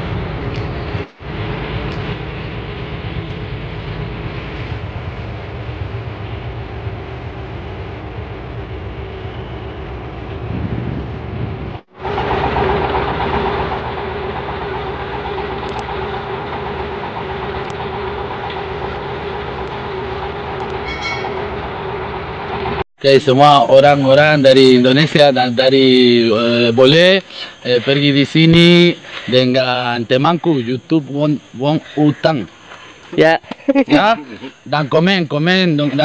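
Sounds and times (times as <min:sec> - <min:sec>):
boat engine running: 0:12.0 - 0:22.8.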